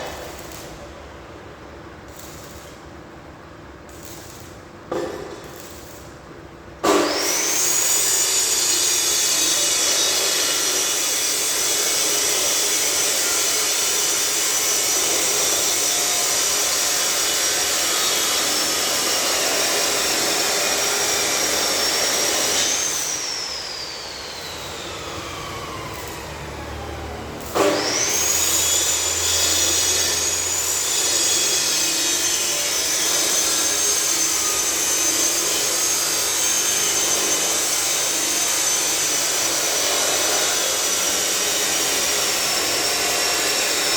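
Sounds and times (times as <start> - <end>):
angle grinder whining: 15.9 - 43.9.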